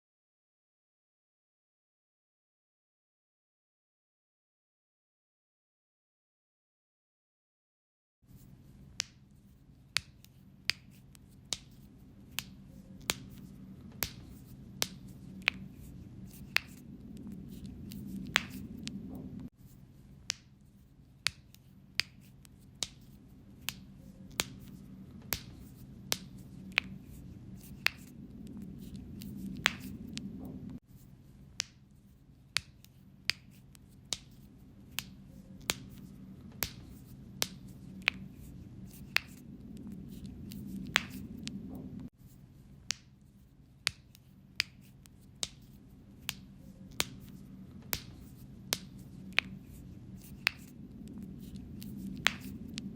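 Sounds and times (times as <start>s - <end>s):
low hum: 12.0s - 19.5s, 23.2s - 30.8s, 34.5s - 42.1s, 45.8s - 52.9s.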